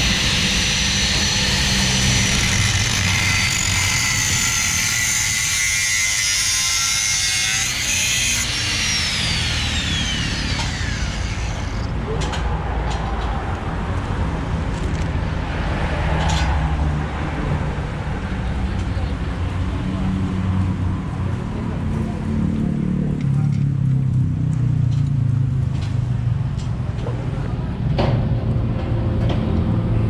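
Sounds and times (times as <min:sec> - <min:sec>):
angle grinder running: 0:00.0 - 0:12.0.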